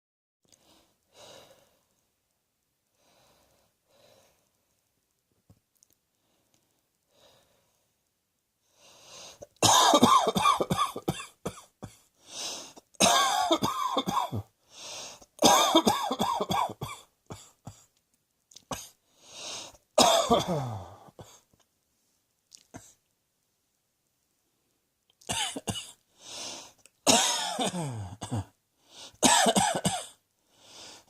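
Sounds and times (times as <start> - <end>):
noisy breath drawn in: 8.7 - 9.5, 12.2 - 12.8, 14.6 - 15.3, 19.1 - 19.8, 26.1 - 26.8, 28.8 - 29.2, 30.4 - 31.0
person coughing: 9.6 - 12.1, 13.0 - 14.5, 15.4 - 17.9, 20.0 - 21.4, 25.3 - 26.0, 27.1 - 28.6, 29.2 - 30.2.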